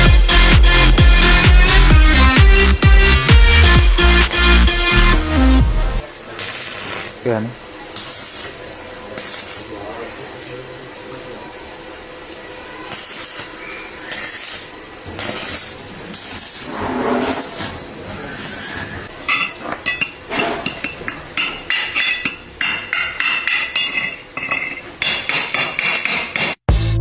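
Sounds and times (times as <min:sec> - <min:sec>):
rushing scraping noises: 0:16.4 - 0:19.0.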